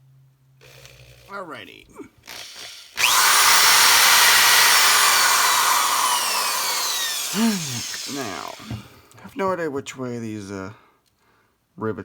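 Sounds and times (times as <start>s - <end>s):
electric drill running: 0.6s - 1.4s, 2.2s - 8.8s.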